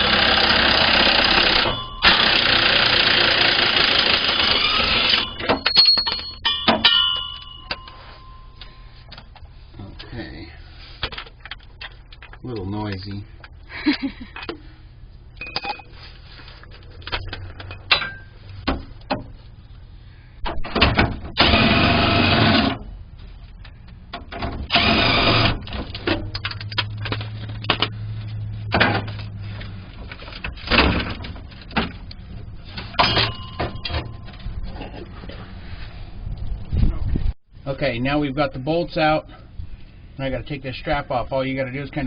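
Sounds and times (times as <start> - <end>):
impact wrench running: 0.0 - 5.6, 21.4 - 22.8, 24.7 - 25.7
tools clinking on metal: 5.1 - 8.8, 15.4 - 15.9.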